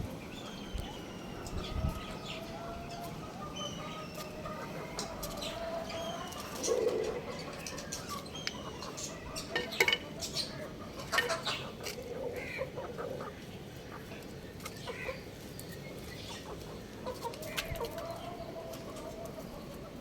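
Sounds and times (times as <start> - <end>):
young rooster peeping: 0.4 - 14.1
young rooster clucking: 0.5 - 15.3, 16.2 - 20.0.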